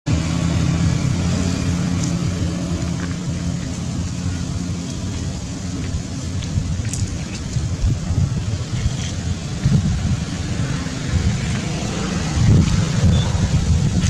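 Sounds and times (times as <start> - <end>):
engine humming: 0.0 - 14.0.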